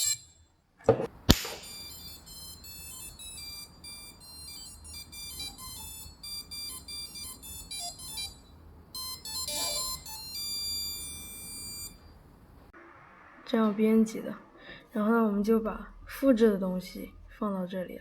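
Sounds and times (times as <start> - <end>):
motors beeping startup melody: 1.7 - 8.4, 9.0 - 11.9.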